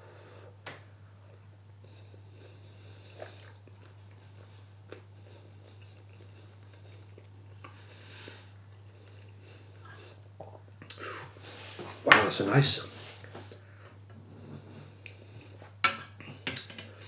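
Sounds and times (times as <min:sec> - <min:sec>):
person chewing food: 0:01.1 - 0:11.0.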